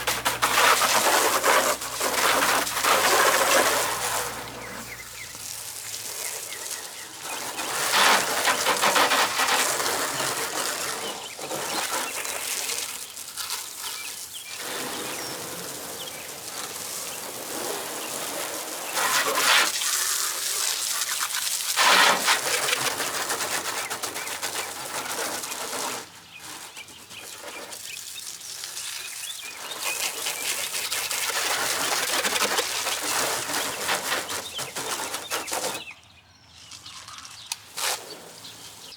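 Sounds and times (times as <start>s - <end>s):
foam sprayer hissing: 0.0s - 10.6s.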